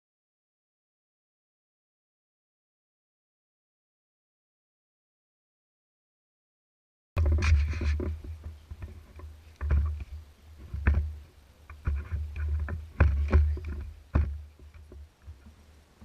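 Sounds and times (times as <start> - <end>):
low rumble on microphone: 7.2 - 16.0
camera handling knocks and clatter: 11.7 - 15.0.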